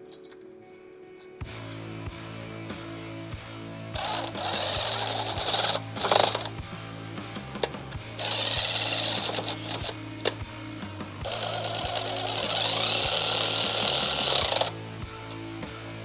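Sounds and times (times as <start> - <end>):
background music: 0.0 - 16.0
clicks: 4.0 - 6.6, 7.2 - 15.4
impact tool hammering bolts: 4.0 - 6.6, 7.4 - 10.4, 11.3 - 14.7.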